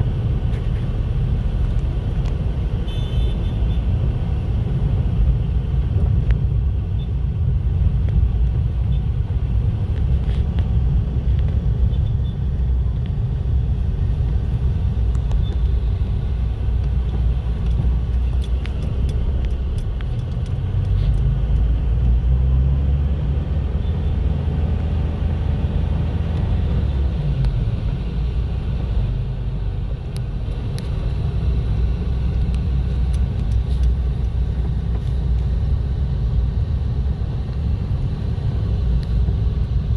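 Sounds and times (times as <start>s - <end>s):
low rumble of car traffic: 0.0s - 39.9s.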